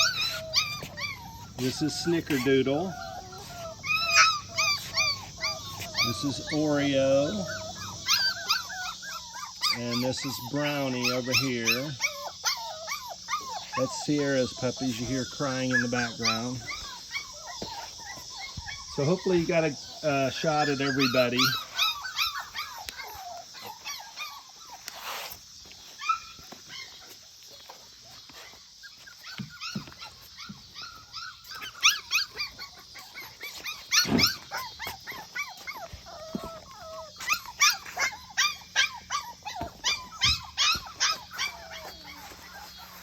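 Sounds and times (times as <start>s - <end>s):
puppies whining and yelping: 0.0s - 43.0s.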